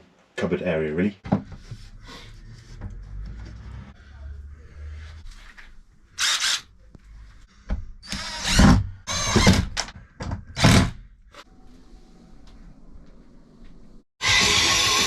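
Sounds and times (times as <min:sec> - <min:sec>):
power drill driving screws: 0:06.2 - 0:06.7, 0:08.0 - 0:09.8, 0:10.6 - 0:11.0, 0:14.2 - 0:15.0.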